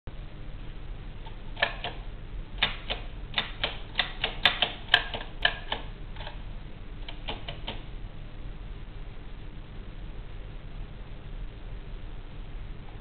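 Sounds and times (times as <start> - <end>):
typewriter key strikes: 2.6 - 6.4, 7.1 - 7.8.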